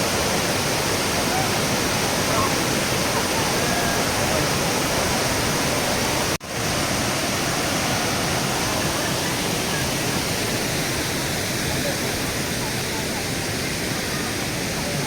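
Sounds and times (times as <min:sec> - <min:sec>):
rush of falling water: 0:00.0 - 0:15.0.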